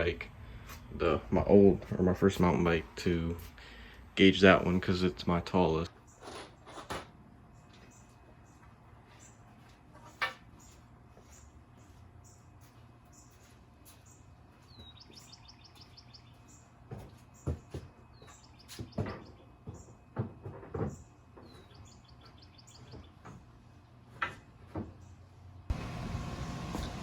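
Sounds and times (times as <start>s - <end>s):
high bird chirps: 13.1s - 16.7s
knocks and thumps: 18.7s - 21.6s.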